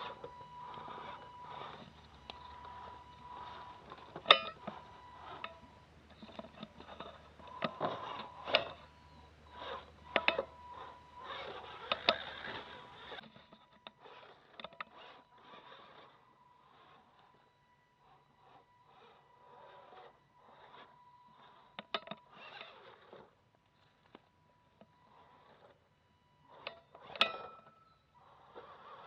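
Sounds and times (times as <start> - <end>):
toy truck clicks and knocks: 0.0 - 8.9, 9.5 - 17.4, 18.1 - 25.8, 26.5 - 29.0
low hum: 0.0 - 21.7
electric motor whine: 0.0 - 29.0.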